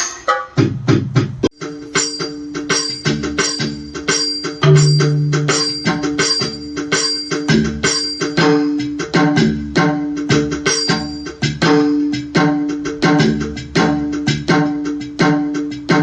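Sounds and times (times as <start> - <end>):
electronic percussion pattern: 0.0 - 16.0
steady held tones: 1.5 - 9.1.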